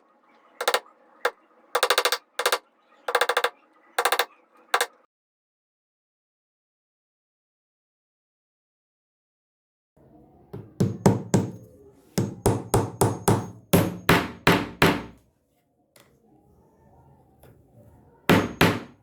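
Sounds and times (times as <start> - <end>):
hammer striking wood: 10.6 - 11.6, 12.2 - 15.2, 18.3 - 19.0.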